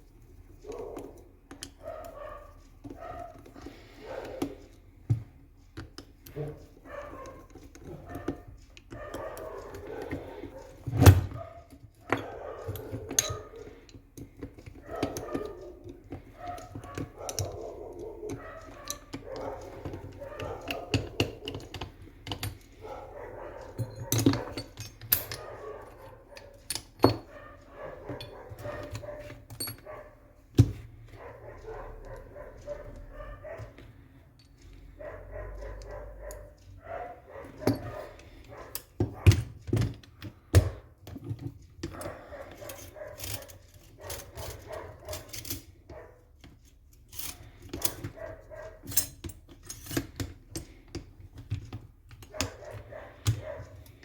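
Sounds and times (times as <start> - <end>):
clicks and knocks of parts: 0.0 - 54.0.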